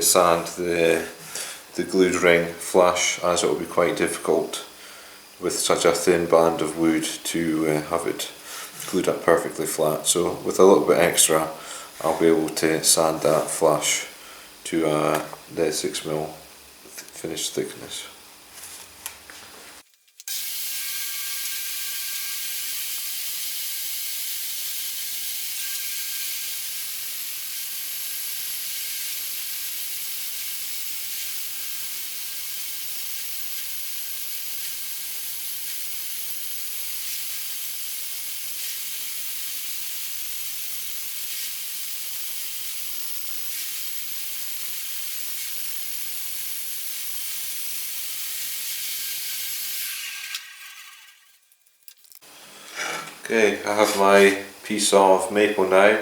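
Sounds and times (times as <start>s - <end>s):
power saw ripping wood: 42.9s - 54.4s.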